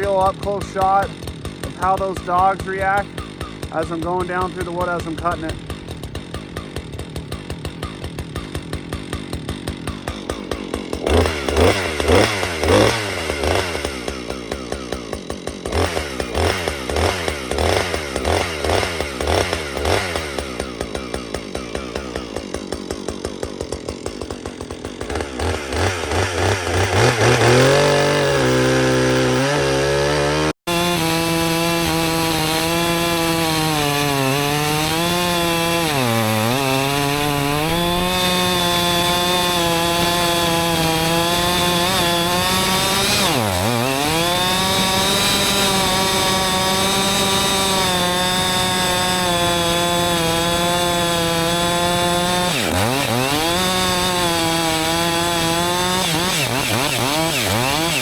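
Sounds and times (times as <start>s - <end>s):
chainsaw revving: 0.0s - 58.0s.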